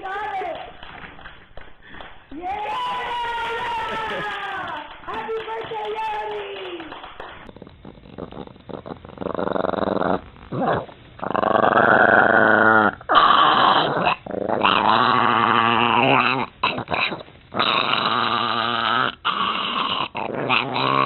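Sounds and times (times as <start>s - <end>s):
dog growling: 7.4s - 21.0s.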